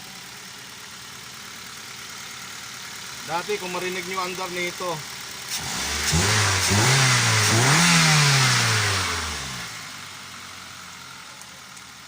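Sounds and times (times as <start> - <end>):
car engine revving: 5.4 - 10.7.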